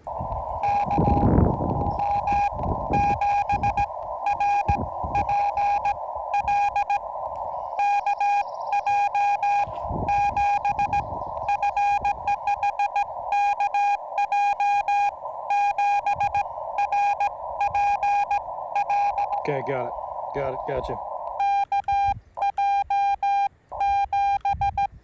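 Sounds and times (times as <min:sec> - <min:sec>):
morse code tone: 0:00.0 - 0:19.6, 0:21.2 - 0:25.0
receiver hiss: 0:00.0 - 0:25.0.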